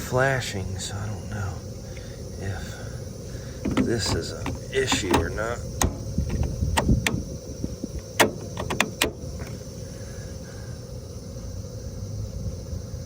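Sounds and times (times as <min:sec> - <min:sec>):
hvac unit humming with whine: 0:00.0 - 0:13.0
sharp clicks and knocks: 0:03.6 - 0:07.3, 0:08.0 - 0:09.6.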